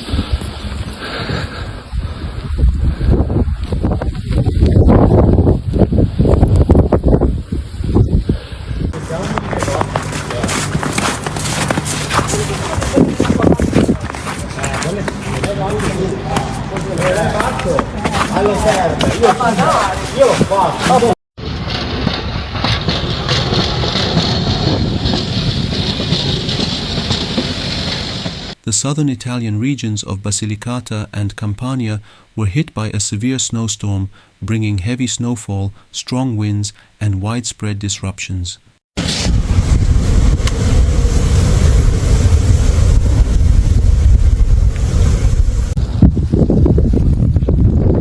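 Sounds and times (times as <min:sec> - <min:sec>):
strong wind buffeting microphone: 0:00.0 - 0:09.0, 0:10.7 - 0:15.3, 0:21.4 - 0:28.6, 0:39.0 - 0:48.0.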